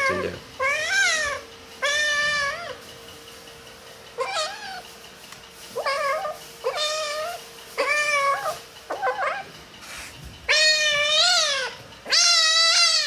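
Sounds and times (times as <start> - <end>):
kitten meowing: 0.0 - 2.8, 4.2 - 4.8, 5.8 - 9.5, 10.5 - 13.0.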